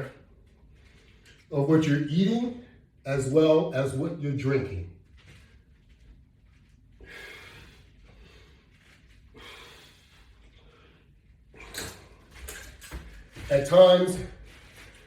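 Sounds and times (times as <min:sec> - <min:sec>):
man breathing heavily: 0:06.9 - 0:12.3.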